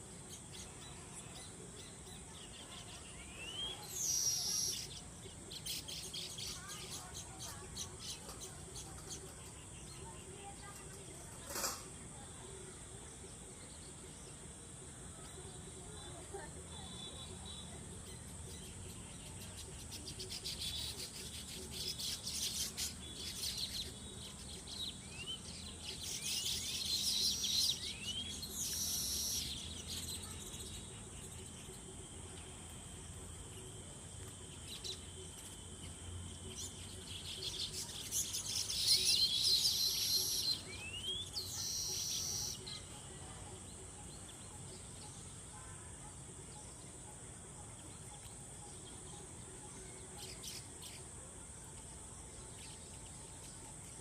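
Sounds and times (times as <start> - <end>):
high insect whine: 19.8 - 43.0
bird chattering and whistling: 26.0 - 30.3, 37.4 - 42.8.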